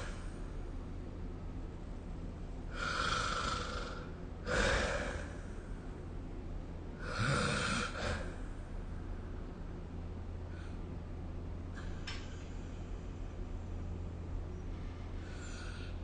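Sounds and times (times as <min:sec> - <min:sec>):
person snoring: 0:02.7 - 0:05.4, 0:07.0 - 0:08.3.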